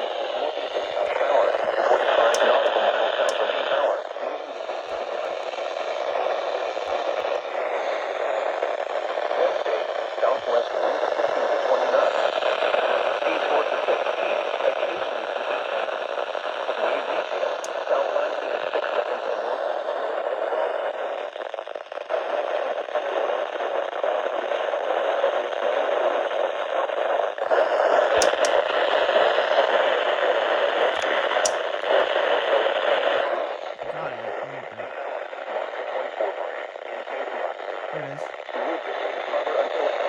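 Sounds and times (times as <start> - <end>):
radio static hiss: 0.0 - 40.0
faint clicks: 28.2 - 28.7.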